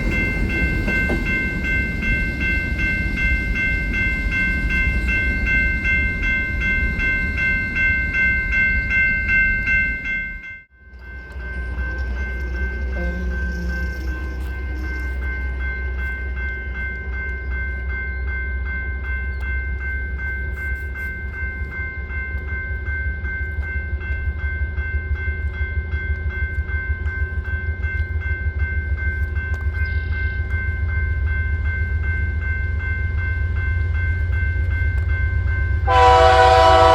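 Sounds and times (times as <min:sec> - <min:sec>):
railroad crossing bell ringing: 0:00.0 - 0:36.9
train rumbling: 0:00.0 - 0:36.9.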